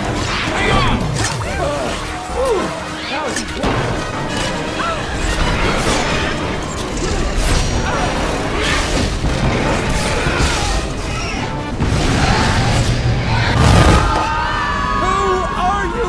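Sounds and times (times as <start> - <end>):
action soundtrack music: 0.0 - 16.0
crashes and booms: 11.7 - 14.4.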